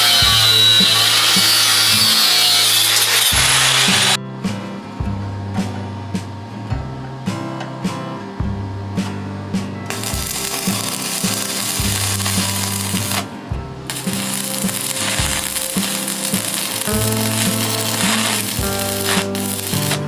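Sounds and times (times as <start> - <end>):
arc welding crackling hiss: 0.0 - 4.2, 9.9 - 20.0
background music: 0.0 - 20.0.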